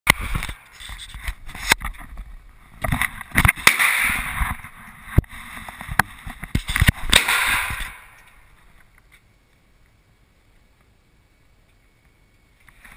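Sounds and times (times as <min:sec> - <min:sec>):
rustling hiss: 0:00.1 - 0:12.9
pistol shots: 0:03.4 - 0:04.4, 0:07.0 - 0:08.2.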